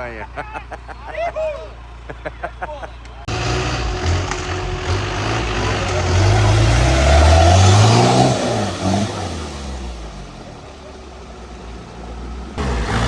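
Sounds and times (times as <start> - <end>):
engine revving hard: 3.3 - 10.5, 12.5 - 13.0.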